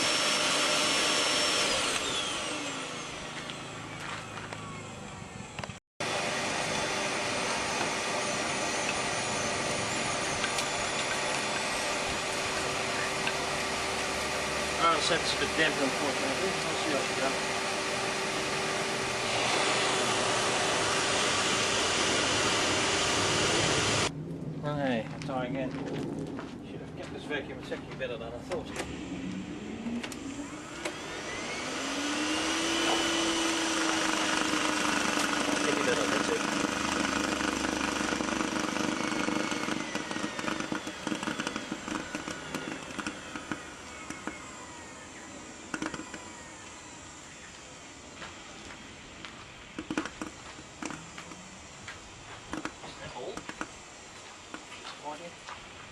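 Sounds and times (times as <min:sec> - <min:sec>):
vacuum cleaner motor whirring: 0:00.0 - 0:24.1, 0:28.5 - 0:51.6
sharp clicks: 0:36.6 - 0:44.4, 0:45.7 - 0:46.3, 0:49.8 - 0:51.4, 0:52.5 - 0:53.8.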